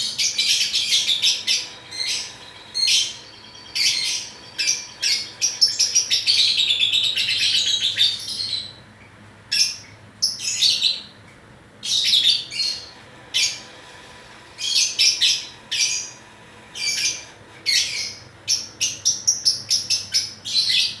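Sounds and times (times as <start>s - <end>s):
lovebird chirping and chattering: 0.0s - 8.7s.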